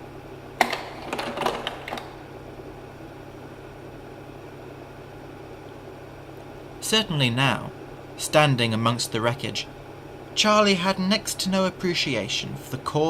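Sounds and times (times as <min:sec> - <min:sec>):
cooling fan hum: 0:00.0 - 0:13.0
slide projector mechanical clatter: 0:00.6 - 0:02.3.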